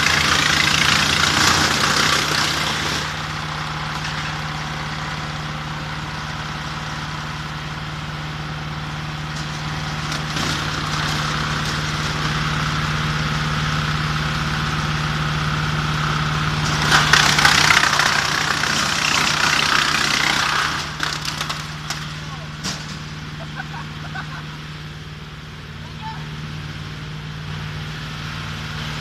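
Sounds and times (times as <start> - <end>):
harsh grinding of wood chipping: 0.0 - 3.2, 16.6 - 22.2
wood chipper engine running: 0.0 - 29.0.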